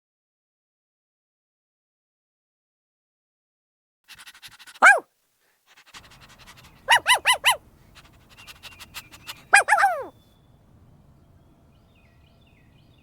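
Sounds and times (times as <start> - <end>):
peacock calls: 4.5 - 5.0, 6.0 - 10.1.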